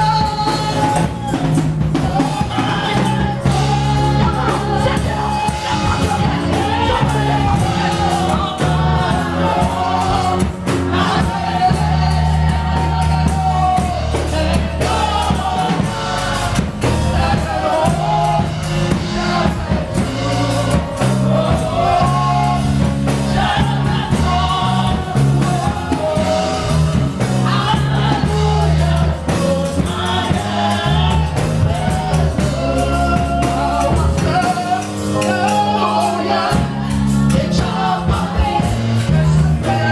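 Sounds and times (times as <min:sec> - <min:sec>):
bass and steady beat: 0:00.0 - 0:39.9
choir singing gospel music: 0:00.0 - 0:39.9.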